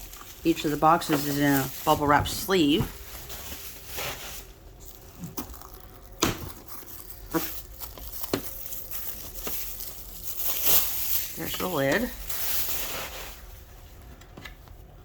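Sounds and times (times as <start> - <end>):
plastic packaging crinkling: 0.0 - 14.0.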